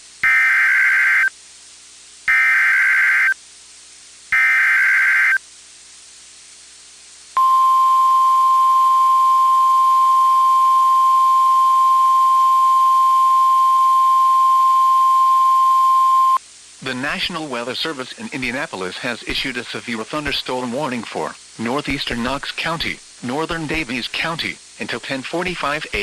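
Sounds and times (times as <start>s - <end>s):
steady attention tone: 7.4s - 17.2s.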